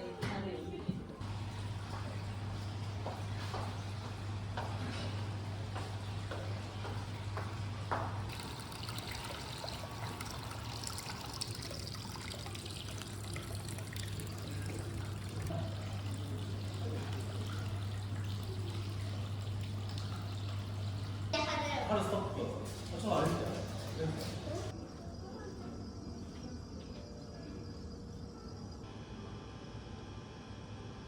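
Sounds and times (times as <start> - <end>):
water running and trickling: 1.2 - 24.7
low steady hum: 4.6 - 22.6.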